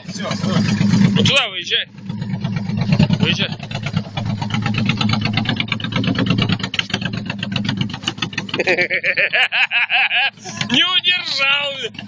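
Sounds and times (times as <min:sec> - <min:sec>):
small vehicle engine pulling away: 0:00.0 - 0:08.8.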